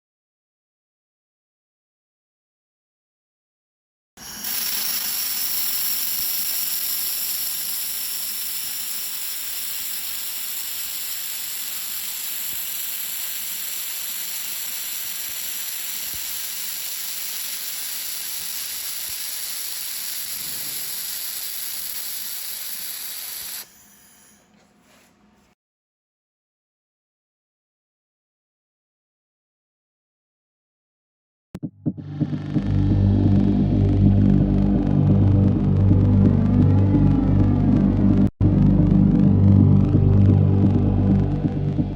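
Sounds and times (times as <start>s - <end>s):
laser welder hissing: 4.2s - 24.5s.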